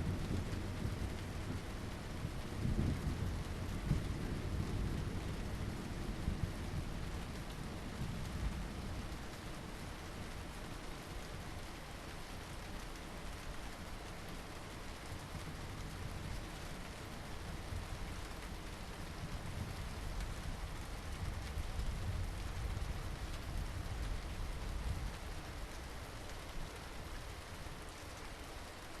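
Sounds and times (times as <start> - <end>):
rolling thunder rumble: 0.0 - 9.1
steady rain: 0.0 - 29.0.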